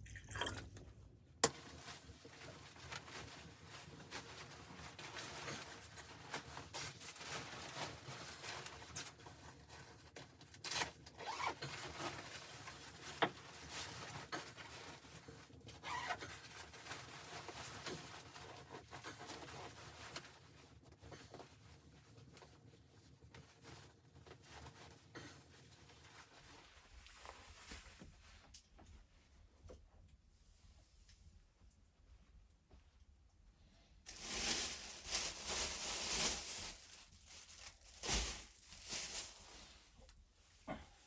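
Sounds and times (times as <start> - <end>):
fabric rustling: 34.1 - 40.0.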